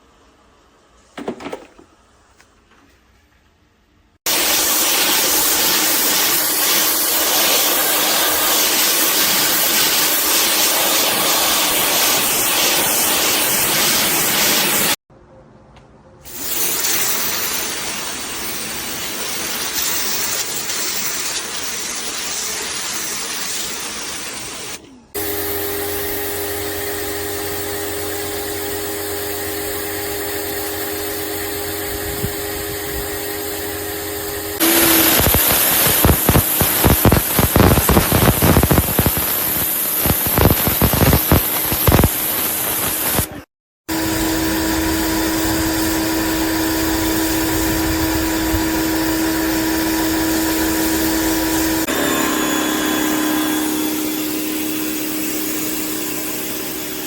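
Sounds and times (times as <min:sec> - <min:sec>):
pressure washer motor hum: 0:01.2 - 0:01.9, 0:04.3 - 0:15.0, 0:16.3 - 0:57.0
crackling water spatter: 0:04.3 - 0:15.0, 0:16.6 - 0:24.8, 0:35.0 - 0:43.2
pressure washer spray hiss: 0:04.3 - 0:15.0, 0:16.3 - 0:57.0.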